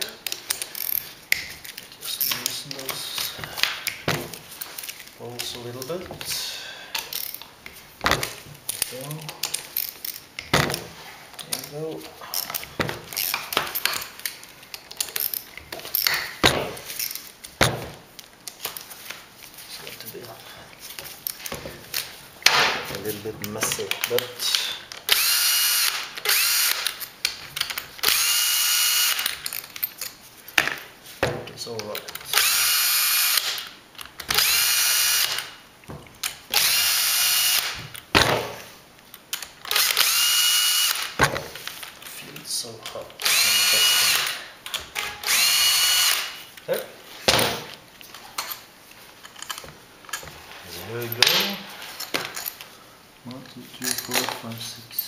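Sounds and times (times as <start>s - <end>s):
metal clinks and knocks: 12.4s - 17.9s, 48.3s - 52.7s, 53.8s - 55.0s
power drill whine: 25.1s - 26.8s, 28.1s - 29.2s, 36.6s - 37.8s, 39.7s - 41.1s, 43.2s - 44.4s, 45.0s - 46.4s.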